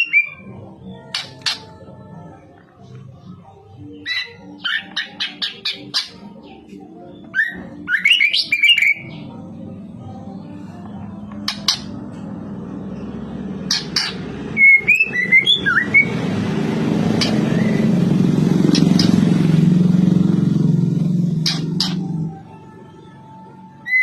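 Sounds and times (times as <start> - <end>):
bird chirping: 3.1 - 9.7, 12.9 - 16.3, 17.0 - 18.0, 18.6 - 19.5, 21.3 - 22.2
low engine hum: 8.9 - 23.8.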